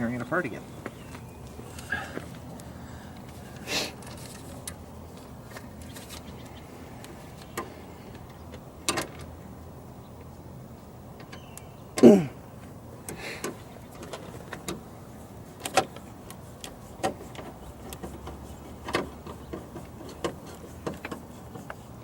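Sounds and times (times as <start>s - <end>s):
clicks and knocks of car trim: 15.6s - 16.0s, 17.0s - 21.8s.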